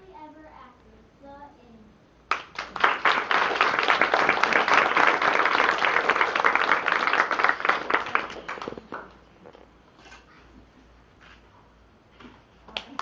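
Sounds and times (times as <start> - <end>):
audience applauding: 2.3 - 9.3.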